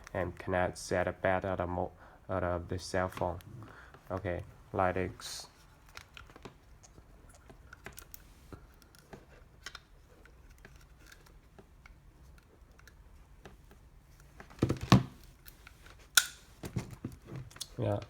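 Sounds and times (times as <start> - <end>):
light clicks and rustles: 5.5 - 18.0.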